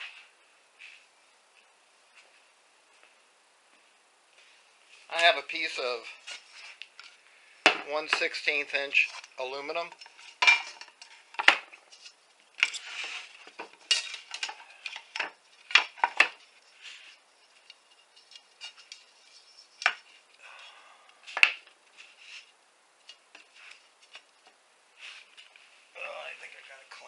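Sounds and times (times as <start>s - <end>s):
metal sheet and tools clinking: 8.1s - 16.4s.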